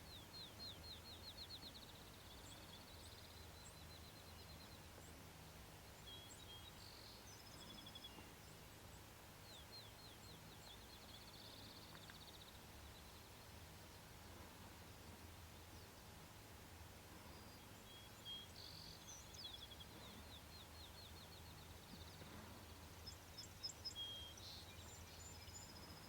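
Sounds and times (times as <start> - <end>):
bird song with trill: 0.0 - 16.2, 17.1 - 26.0.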